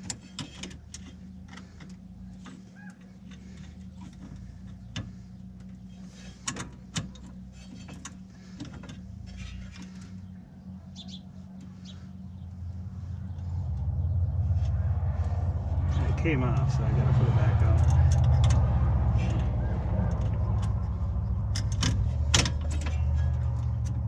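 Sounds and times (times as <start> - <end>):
hand tools and metal parts clinking: 0.0 - 10.3, 17.6 - 24.0
steady low hum: 0.0 - 24.0.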